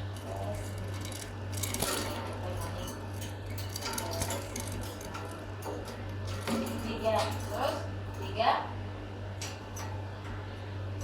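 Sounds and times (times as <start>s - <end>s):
steady low hum: 0.0s - 11.0s
light clinks and rattles: 0.2s - 8.4s.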